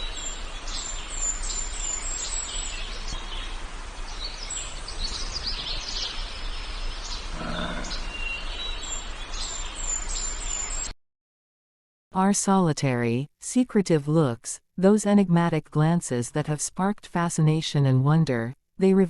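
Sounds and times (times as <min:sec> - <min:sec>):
songbirds chirping and trilling: 0:00.0 - 0:10.9
short low bird call: 0:07.3 - 0:08.3.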